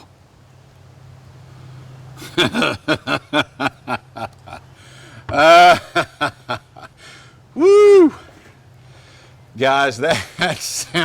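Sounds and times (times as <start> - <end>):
man chuckling: 2.2 - 4.7, 5.3 - 7.0
man exclaiming: 7.6 - 8.2.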